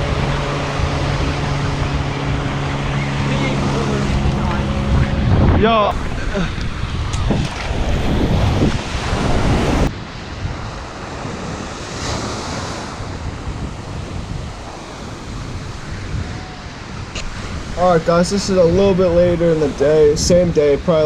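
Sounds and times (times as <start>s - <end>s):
ocean surf washing on beach: 0.0s - 21.0s
wind buffeting microphone: 0.0s - 21.0s.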